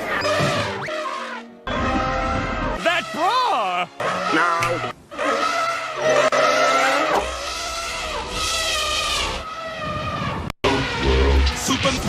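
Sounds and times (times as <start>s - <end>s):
elephant trumpeting: 0.0s - 11.7s.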